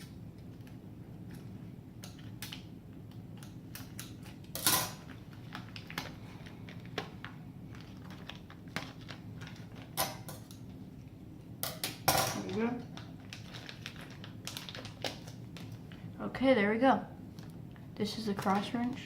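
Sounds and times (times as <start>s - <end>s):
packaging being handled: 5.1s - 10.0s, 12.4s - 16.0s.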